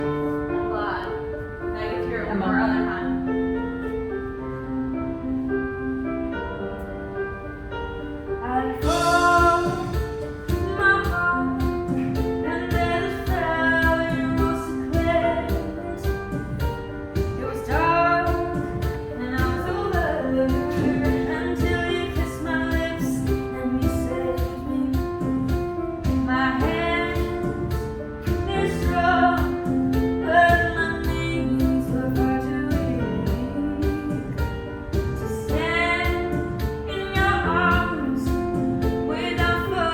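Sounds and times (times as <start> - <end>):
instrumental backing with steady beat: 5.2 - 39.9
woman singing: 8.4 - 39.9.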